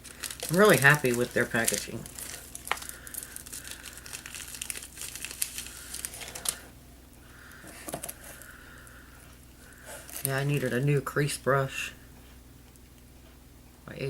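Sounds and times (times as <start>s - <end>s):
plastic and bubble wrap crinkling: 0.0s - 6.7s, 7.5s - 8.6s, 9.7s - 11.1s.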